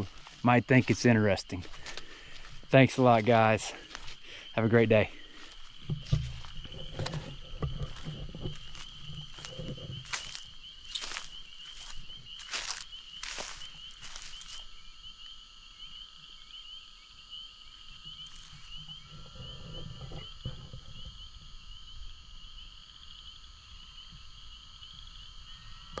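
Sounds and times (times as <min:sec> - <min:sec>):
rustling steps: 0:00.0 - 0:14.7
frogs calling: 0:00.0 - 0:26.0.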